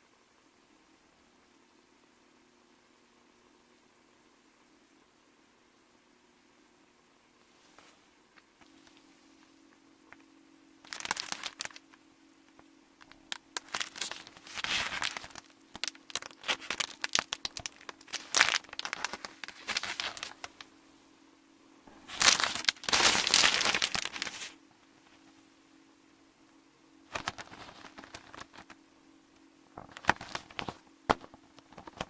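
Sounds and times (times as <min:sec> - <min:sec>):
crinkling and crackling: 0:07.5 - 0:20.7, 0:21.9 - 0:25.4, 0:27.1 - 0:28.8, 0:29.7 - 0:32.0.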